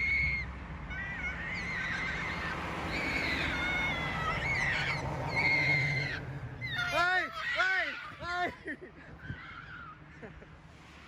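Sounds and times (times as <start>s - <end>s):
high wavering animal calls: 0.0s - 8.2s.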